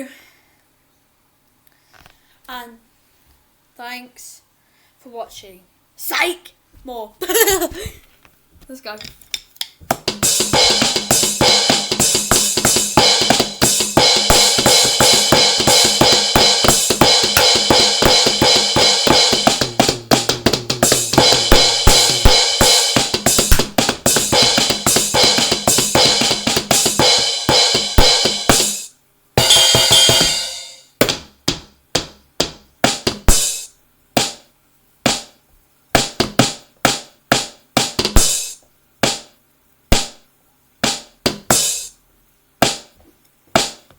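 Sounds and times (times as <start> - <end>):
electronic drum kit playing: 9.9 - 41.9, 42.6 - 43.0, 43.6 - 43.9.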